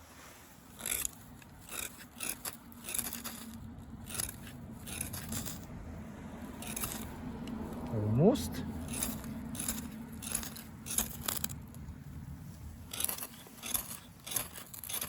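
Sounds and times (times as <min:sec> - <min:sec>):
ferro rod scraping: 0:00.0 - 0:05.7, 0:06.4 - 0:07.9, 0:12.5 - 0:15.0.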